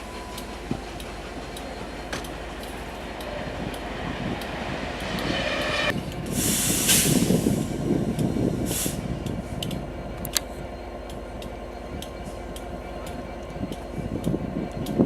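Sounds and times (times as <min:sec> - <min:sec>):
train rumbling on track: 0:00.0 - 0:15.0
train wheel squeal: 0:00.0 - 0:15.0
track clicks: 0:00.1 - 0:05.4, 0:09.2 - 0:15.0.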